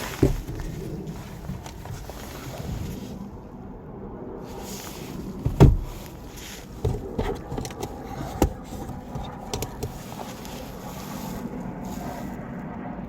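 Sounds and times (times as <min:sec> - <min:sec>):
heavy thump: 0:00.0 - 0:00.8, 0:05.4 - 0:06.1.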